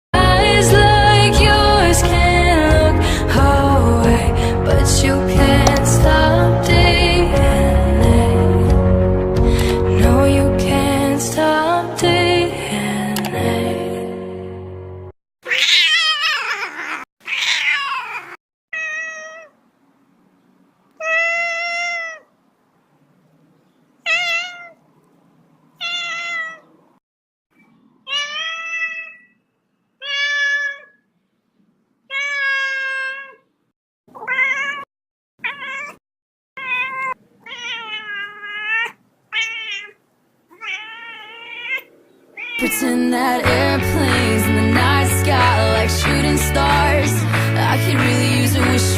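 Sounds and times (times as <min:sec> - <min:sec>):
cat meowing: 0:15.4 - 0:19.6, 0:21.0 - 0:22.3, 0:24.0 - 0:24.8, 0:25.8 - 0:26.7, 0:28.1 - 0:29.4, 0:30.0 - 0:31.0, 0:32.1 - 0:33.5, 0:34.1 - 0:36.0, 0:36.6 - 0:42.8.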